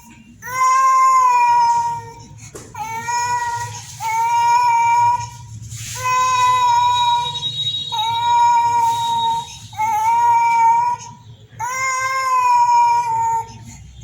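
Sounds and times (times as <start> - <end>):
infant crying: 8.0 - 13.8.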